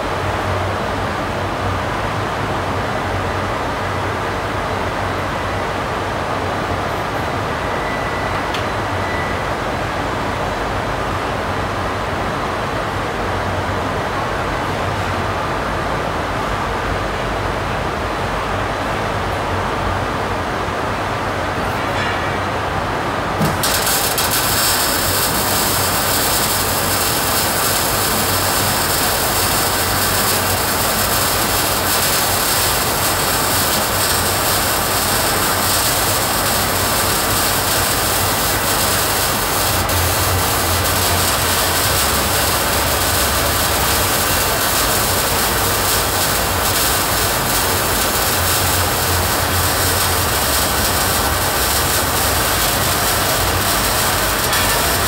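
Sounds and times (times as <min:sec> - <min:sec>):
arc welding hiss: 0:23.4 - 0:55.0.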